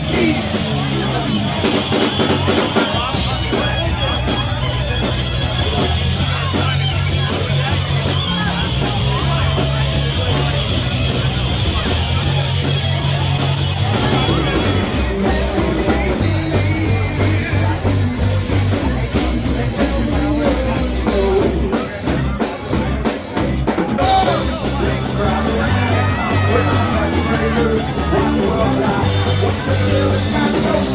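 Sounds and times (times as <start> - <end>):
live rock band playing: 0.0 - 30.9.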